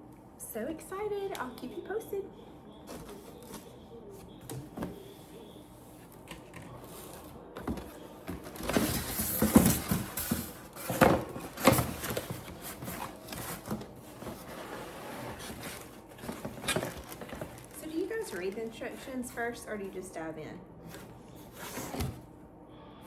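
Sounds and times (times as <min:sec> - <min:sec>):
packaging rustling: 0:07.0 - 0:19.1.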